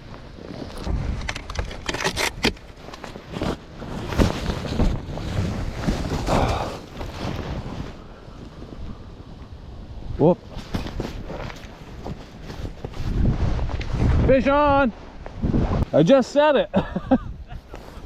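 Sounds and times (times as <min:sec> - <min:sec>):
strong wind buffeting microphone: 0:03.4 - 0:15.9, 0:16.8 - 0:18.0.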